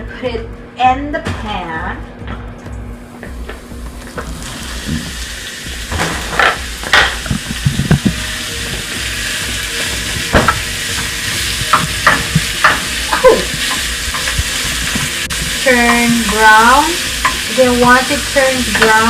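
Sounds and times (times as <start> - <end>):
meat sizzling in a pan: 4.1 - 19.0.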